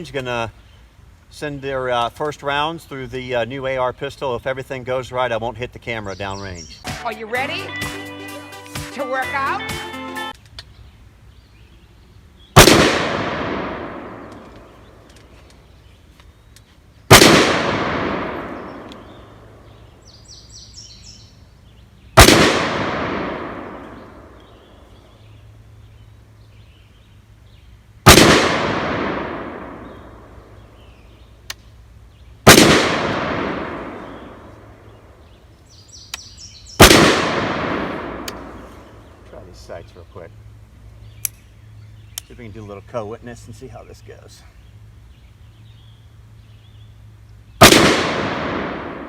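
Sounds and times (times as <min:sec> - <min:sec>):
gunshots with echo: 0:12.6 - 0:14.4, 0:17.1 - 0:19.2, 0:22.2 - 0:24.4, 0:28.1 - 0:30.0, 0:32.5 - 0:34.5, 0:36.8 - 0:38.4, 0:47.6 - 0:49.0.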